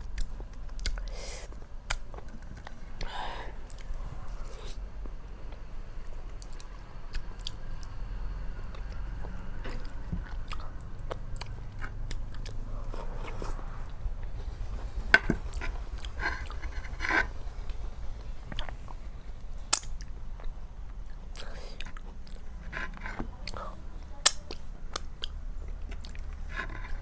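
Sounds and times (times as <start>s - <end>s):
chewing with wet mouth clicks: 0.1s - 1.0s, 8.7s - 12.6s, 23.4s - 26.4s
crunchy bites: 19.7s - 20.5s.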